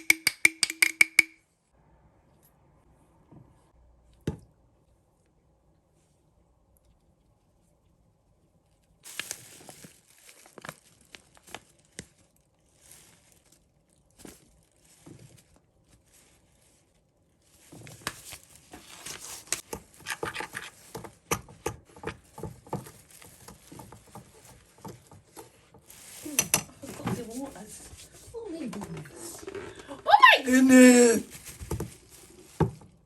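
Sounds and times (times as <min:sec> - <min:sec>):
kitchen taps and clicks: 0:00.0 - 0:01.4
rustling: 0:05.9 - 0:33.0.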